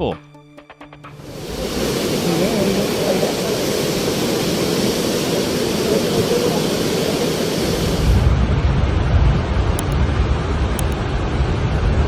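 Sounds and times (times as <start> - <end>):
floodwater rushing: 1.2 - 8.3
deep low rumble: 1.4 - 4.3.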